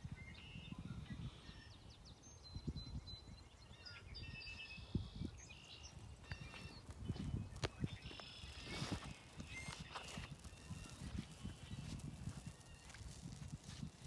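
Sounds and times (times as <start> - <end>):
birds chirping and whistling: 0.2 - 14.0.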